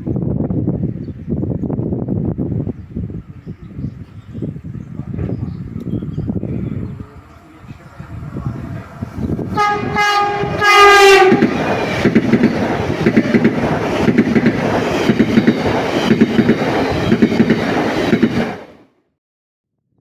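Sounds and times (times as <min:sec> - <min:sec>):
train rumbling past: 0:05.6 - 0:18.9
train wheels clattering on rails: 0:08.7 - 0:18.7
train horn blasts: 0:09.4 - 0:11.6.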